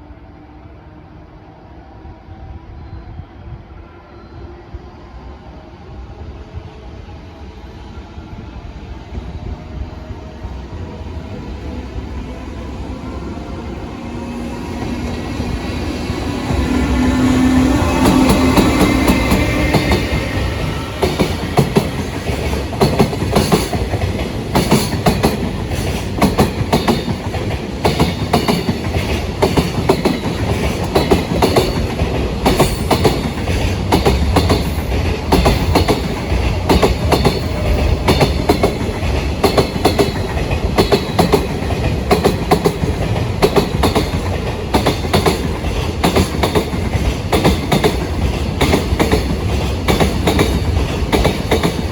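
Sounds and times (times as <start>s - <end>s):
train wheels clacking on rails: 14.2s - 51.9s.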